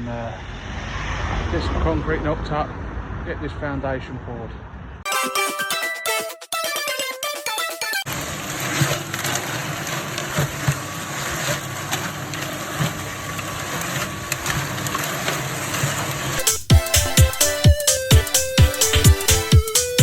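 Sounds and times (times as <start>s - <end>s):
music: 5.1s - 8.1s, 16.4s - 20.0s
concrete mixer motor hum: 8.0s - 20.0s
concrete tumbling in drum: 8.1s - 17.2s.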